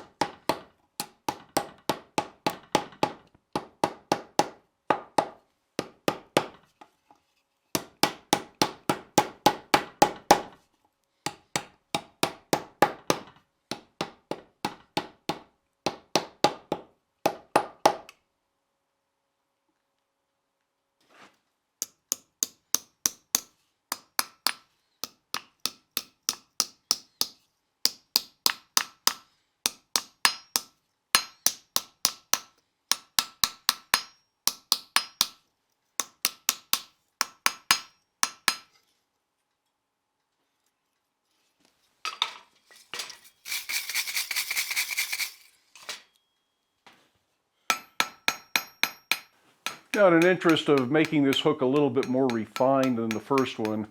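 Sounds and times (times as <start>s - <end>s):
hammer striking steel: 21.8s - 35.4s, 36.0s - 38.7s, 47.7s - 53.9s.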